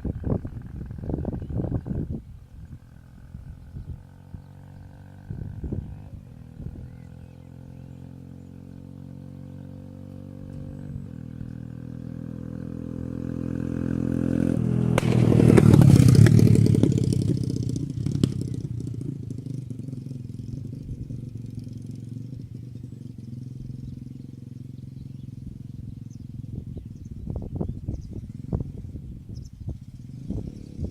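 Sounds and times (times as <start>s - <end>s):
motorcycle engine passing by: 0.0s - 30.9s
sharp exhaust pops: 14.9s - 17.3s.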